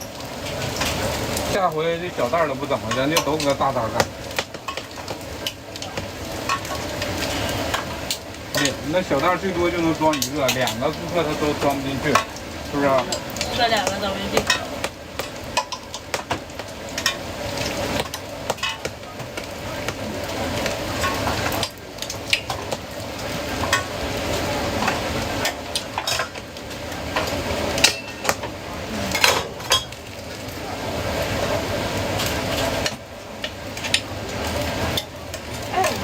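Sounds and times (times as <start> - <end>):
food frying sizzle: 0.0 - 36.0
metal utensils and dishes clattering: 24.8 - 26.4, 27.2 - 28.5, 29.2 - 30.0.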